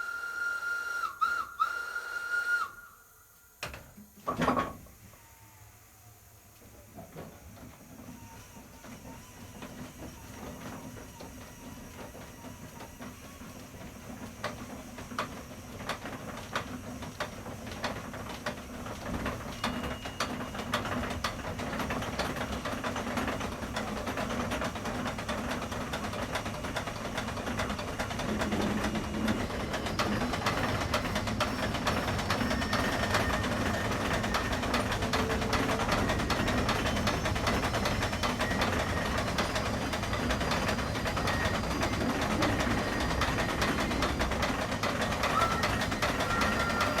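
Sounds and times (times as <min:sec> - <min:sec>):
steam hissing: 0:00.0 - 0:04.2
steam crane machinery clattering: 0:06.8 - 0:47.0.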